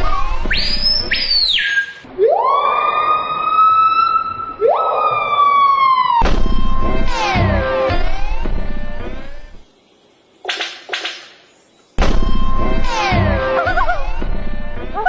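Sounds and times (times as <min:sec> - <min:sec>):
music playing: 0:06.6 - 0:09.7, 0:12.1 - 0:15.0.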